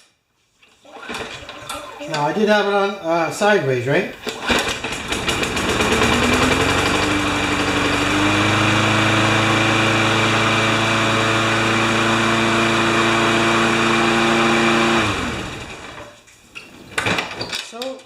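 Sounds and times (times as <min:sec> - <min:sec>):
lawn mower engine running: 0:00.9 - 0:02.2, 0:04.2 - 0:16.1
engine winding down: 0:04.2 - 0:16.1.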